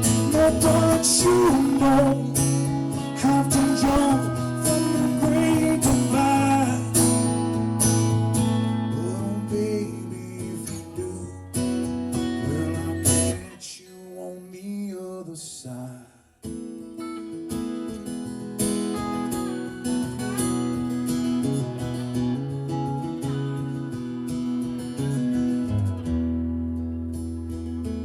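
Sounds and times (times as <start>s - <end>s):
acoustic guitar strumming: 0.0s - 13.7s, 16.4s - 28.0s
person singing: 0.0s - 16.1s.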